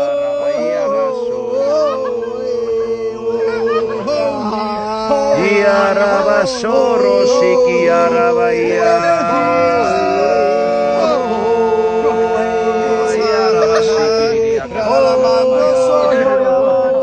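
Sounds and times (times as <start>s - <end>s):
voices chanting wordless tones: 0.0s - 17.0s.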